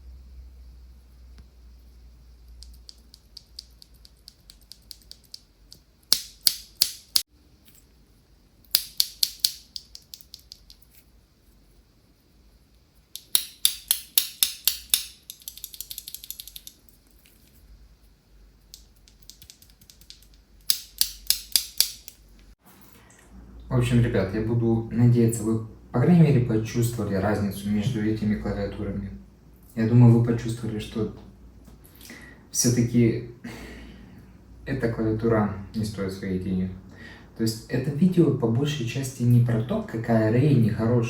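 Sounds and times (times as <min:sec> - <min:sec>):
mechanical keyboard key clicks: 0:13.2 - 0:16.8, 0:18.7 - 0:22.2.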